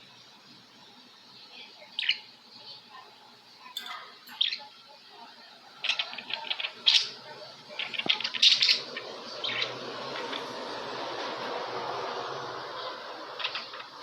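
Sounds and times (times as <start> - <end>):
steady background hum: 0.0 - 14.0
budgerigars chirping: 2.0 - 2.3, 4.3 - 4.7, 5.8 - 10.8, 12.7 - 14.0.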